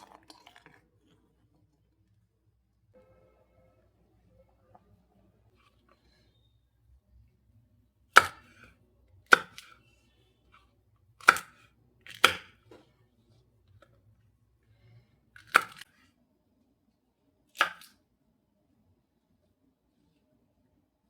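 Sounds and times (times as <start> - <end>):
knife chopping on cutting board: 8.2 - 8.7, 9.3 - 9.8, 11.2 - 12.8, 15.4 - 15.8, 17.6 - 17.9.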